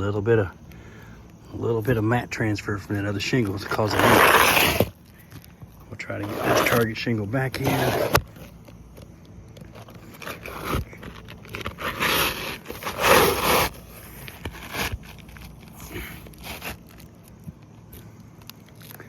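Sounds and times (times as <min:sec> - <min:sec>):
shingle scraping and crackling: 0:02.0 - 0:17.6.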